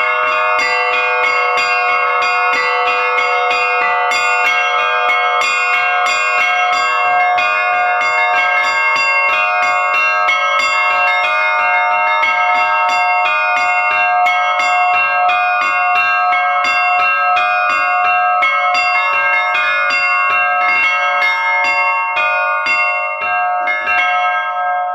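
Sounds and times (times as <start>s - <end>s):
church bells ringing: 0.0s - 24.9s.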